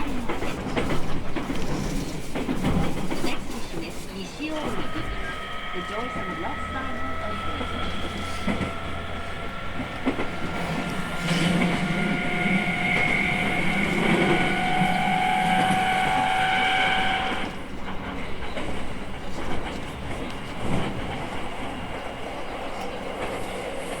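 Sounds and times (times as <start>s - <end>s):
train wheels rumbling: 0.0s - 24.0s
train motor tones: 4.6s - 17.7s.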